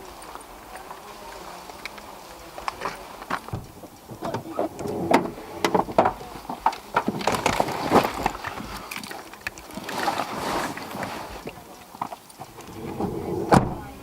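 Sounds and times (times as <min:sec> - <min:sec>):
rustling: 0:04.9 - 0:13.4.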